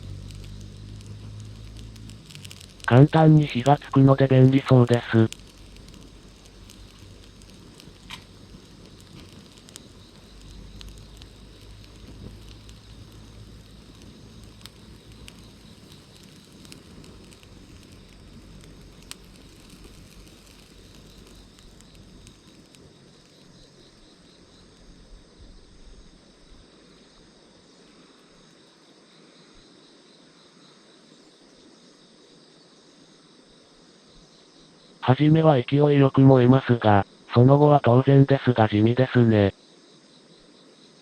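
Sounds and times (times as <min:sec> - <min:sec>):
charcoal flame rushing: 0:00.0 - 0:24.9
crackles and pops: 0:00.0 - 0:25.3, 0:27.8 - 0:28.7, 0:35.0 - 0:39.6
crickets chirping: 0:00.0 - 0:41.0.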